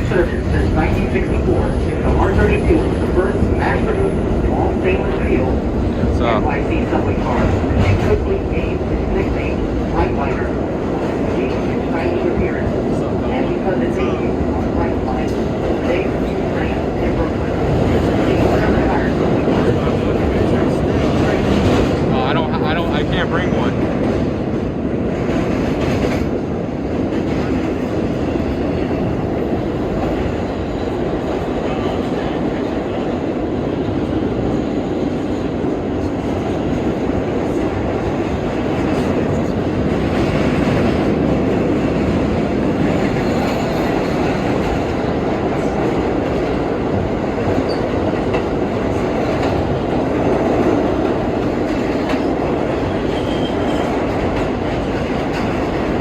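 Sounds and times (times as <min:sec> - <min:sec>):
subway car rolling on track: 0:00.0 - 0:56.0
clack of rail joints: 0:07.0 - 0:12.5, 0:25.1 - 0:29.1, 0:38.2 - 0:56.0.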